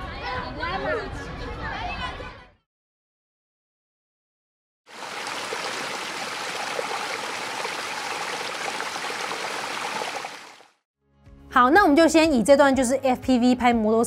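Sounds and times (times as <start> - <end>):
stream water babbling: 4.9 - 10.8.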